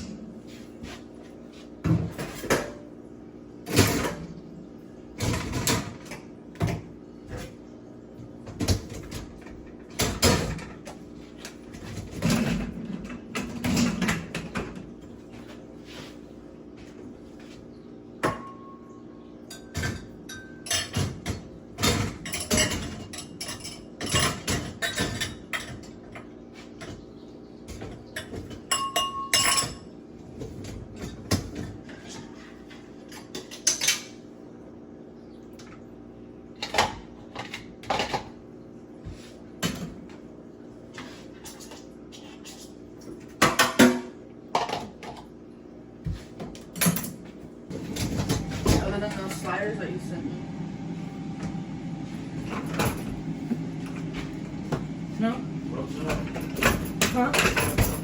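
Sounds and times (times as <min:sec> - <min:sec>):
dishes and cutlery clinking: 0:19.5 - 0:26.0, 0:27.8 - 0:29.8, 0:56.0 - 0:58.0.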